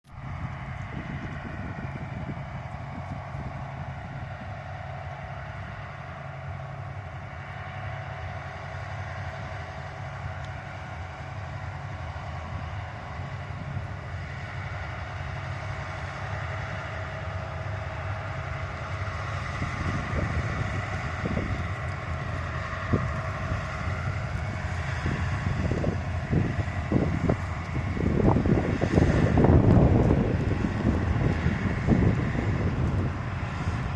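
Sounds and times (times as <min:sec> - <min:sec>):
diesel locomotive engine drone: 0:00.0 - 0:33.9
wind buffeting microphone: 0:00.1 - 0:33.9.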